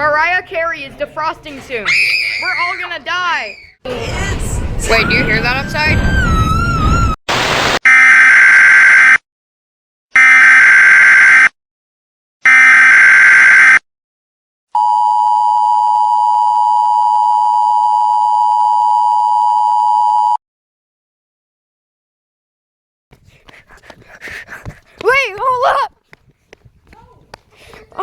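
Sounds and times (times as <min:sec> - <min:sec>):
digital data bursts: 0:07.3 - 0:07.8.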